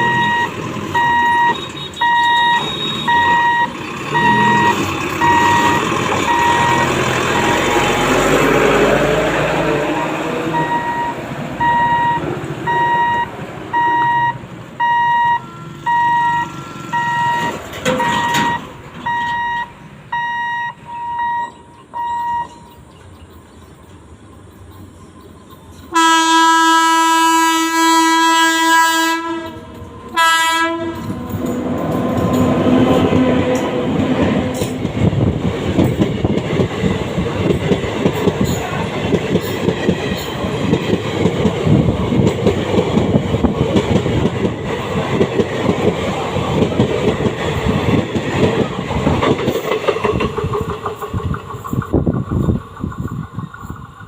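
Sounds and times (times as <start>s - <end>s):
electronic warning beeps: 0.0s - 7.8s, 10.0s - 22.8s
train wheels clacking on rail joints: 0.0s - 12.9s, 15.7s - 19.5s, 29.3s - 54.0s
train horn blast: 1.1s - 11.1s, 15.3s - 17.6s, 25.9s - 34.7s.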